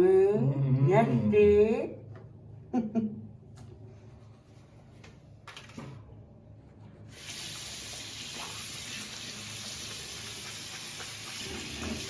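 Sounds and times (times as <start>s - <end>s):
running water hiss: 7.1s - 12.0s.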